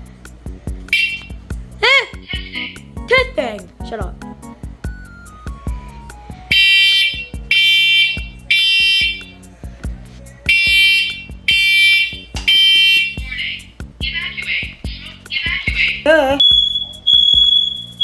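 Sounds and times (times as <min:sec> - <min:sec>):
background music with steady beat: 0:00.0 - 0:18.0
smoke alarm beeping: 0:01.0 - 0:01.2, 0:06.5 - 0:09.3, 0:10.5 - 0:13.2, 0:16.4 - 0:18.0.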